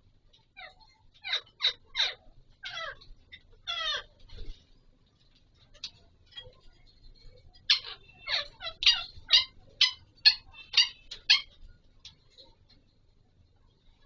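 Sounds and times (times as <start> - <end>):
parakeet squawking: 0.5 - 4.2, 7.6 - 11.7.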